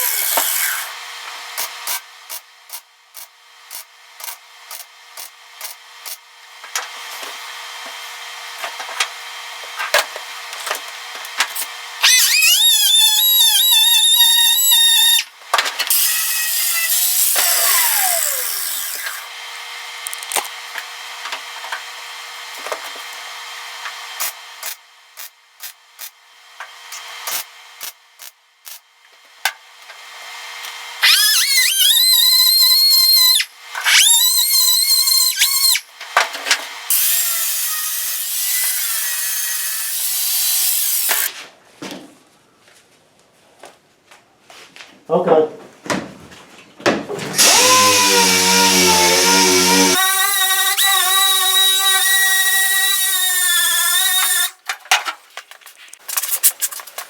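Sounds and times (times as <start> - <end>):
power sander whining: 47.3 - 54.6.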